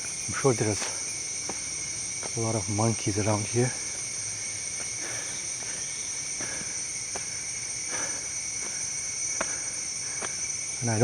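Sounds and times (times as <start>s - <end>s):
jungle insects chorus: 0.0s - 11.0s
faint footsteps: 4.7s - 10.5s.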